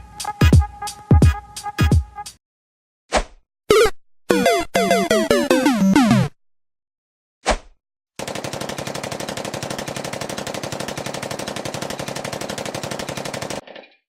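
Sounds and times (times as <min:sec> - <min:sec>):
machine-gun fire: 0:08.2 - 0:13.6.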